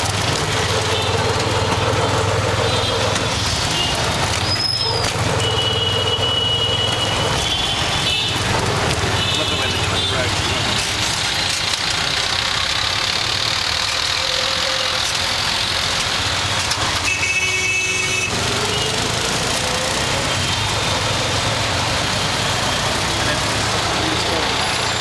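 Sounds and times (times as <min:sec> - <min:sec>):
traffic engines and road noise: 0:00.0 - 0:25.0
vehicle horn: 0:14.2 - 0:15.1, 0:17.0 - 0:19.1.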